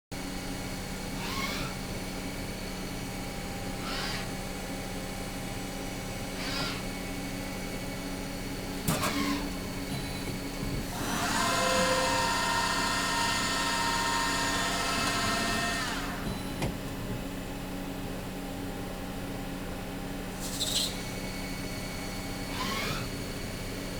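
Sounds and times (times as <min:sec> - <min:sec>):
lathe spindle whine: 0:10.9 - 0:16.3.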